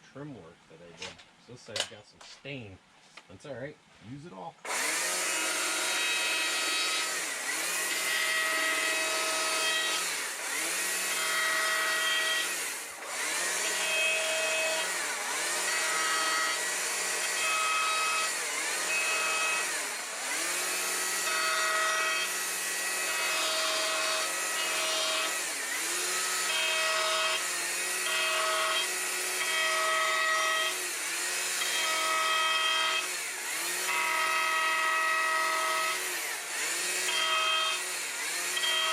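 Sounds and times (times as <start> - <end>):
power tool carving wood: 4.7 - 38.9.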